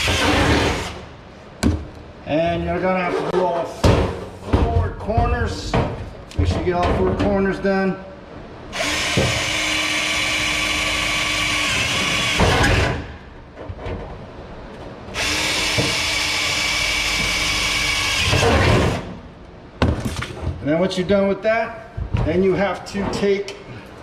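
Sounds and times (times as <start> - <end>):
power drill boring through metal: 0.0 - 1.0, 8.8 - 13.0, 15.2 - 19.0.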